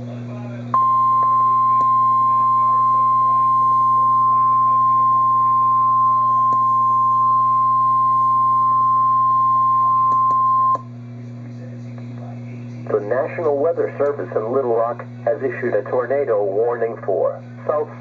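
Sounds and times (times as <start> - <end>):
weather radio alarm tone: 0.8 - 10.8.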